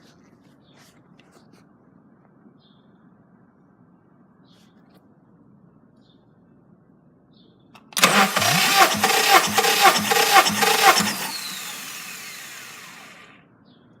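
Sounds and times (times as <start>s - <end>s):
starter motor cranking engine: 7.8s - 13.4s
starter spinning down whine: 7.8s - 13.4s.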